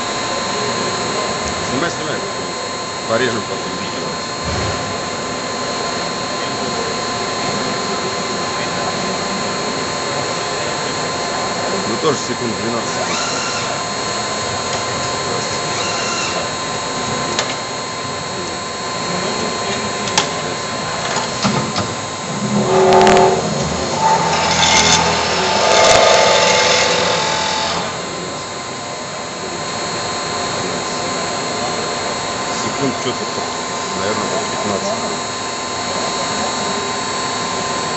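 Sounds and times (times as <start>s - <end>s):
machine high whine: 0.0s - 37.9s
machine drilling metal: 10.8s - 17.7s, 19.3s - 28.8s
constant high tones: 18.3s - 35.1s
machine tool mechanical noise: 22.4s - 28.1s.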